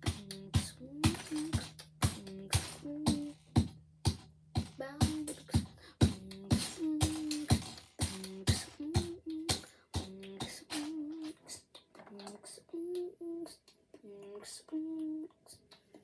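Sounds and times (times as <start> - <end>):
rhythmic music with percussive beat: 0.0 - 11.4.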